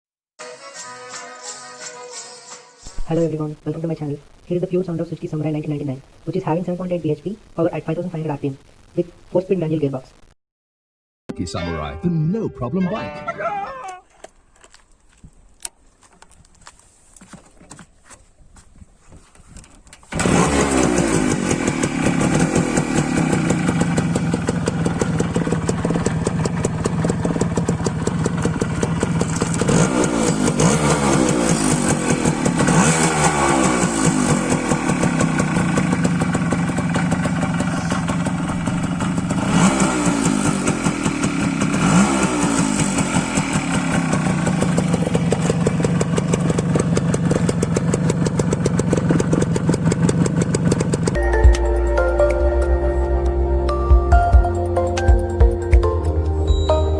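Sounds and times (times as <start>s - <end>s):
engine starting and running: 20.0s - 52.0s.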